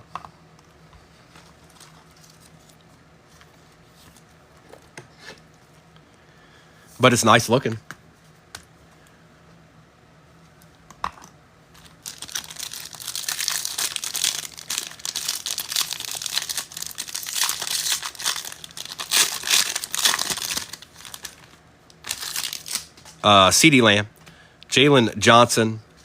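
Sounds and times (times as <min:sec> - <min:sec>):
foil wrapper tearing and crinkling: 0:11.8 - 0:23.2.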